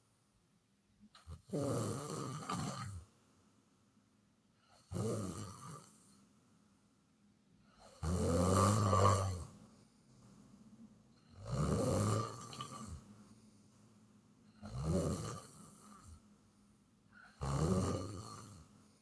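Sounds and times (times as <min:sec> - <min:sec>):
person snoring: 0:07.8 - 0:09.6, 0:11.4 - 0:13.1, 0:14.6 - 0:16.2, 0:17.2 - 0:18.7.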